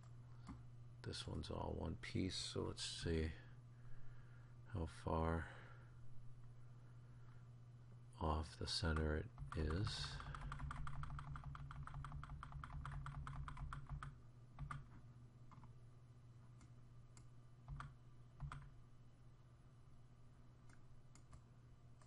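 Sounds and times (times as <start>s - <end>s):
computer keyboard typing: 8.9s - 14.9s, 17.7s - 18.7s.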